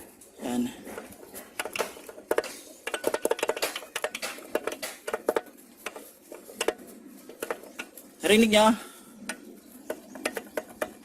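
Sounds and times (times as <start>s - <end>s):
metallic clicking and clinking: 0.9s - 8.1s.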